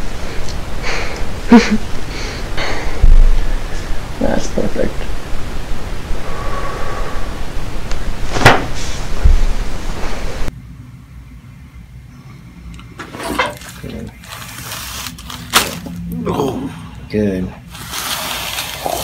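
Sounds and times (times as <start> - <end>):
steady hiss: 0.0 - 10.6.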